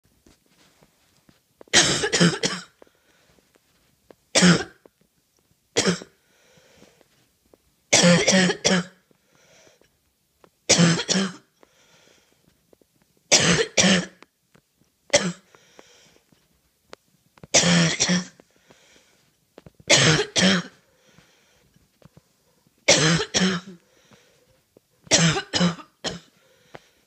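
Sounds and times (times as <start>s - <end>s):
person coughing harshly: 1.7s - 2.8s, 4.4s - 4.8s, 5.8s - 6.2s, 7.9s - 9.0s, 10.7s - 11.5s, 13.3s - 14.2s, 15.1s - 15.5s, 17.5s - 18.4s, 19.9s - 20.8s, 22.9s - 23.8s, 25.1s - 26.4s.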